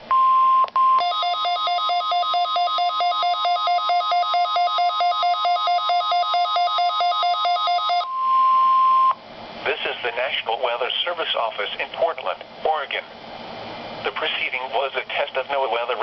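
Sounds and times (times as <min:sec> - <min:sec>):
steady warning tone: 0:00.1 - 0:09.2
two-tone alarm beeping: 0:00.1 - 0:09.2.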